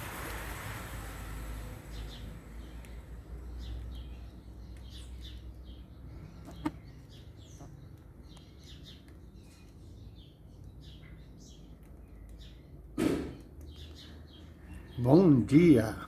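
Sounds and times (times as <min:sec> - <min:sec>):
small birds chirping: 0:01.8 - 0:16.0.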